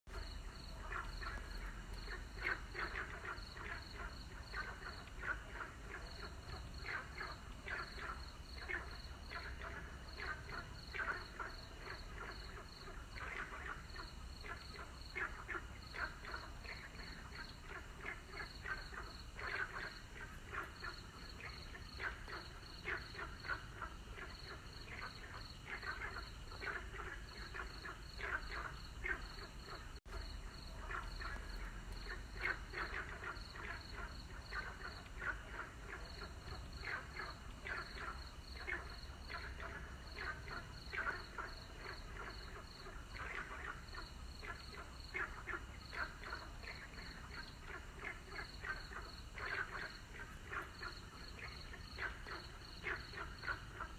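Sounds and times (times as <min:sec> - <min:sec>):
frogs croaking: 0:00.1 - 0:53.9.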